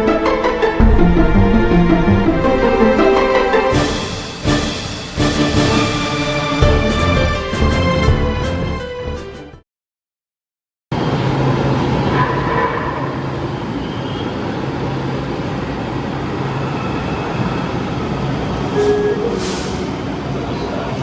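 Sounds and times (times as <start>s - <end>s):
light rail train rumbling: 0.5s - 6.6s, 10.9s - 21.0s.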